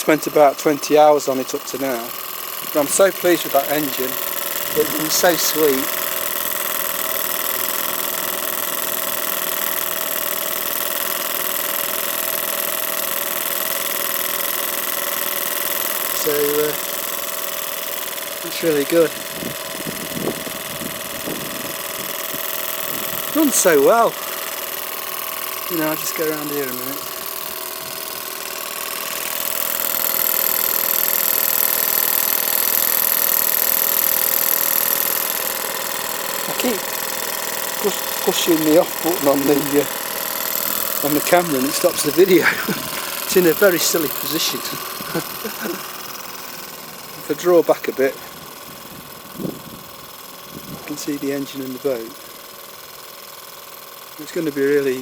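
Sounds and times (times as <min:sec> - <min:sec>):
steam engine running: 0:00.0 - 0:55.0.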